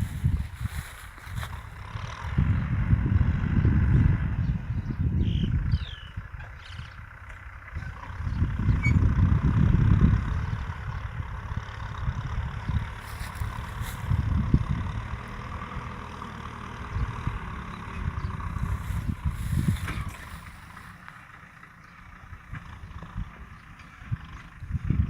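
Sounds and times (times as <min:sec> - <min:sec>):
tractor diesel engine under load: 0:00.0 - 0:25.0.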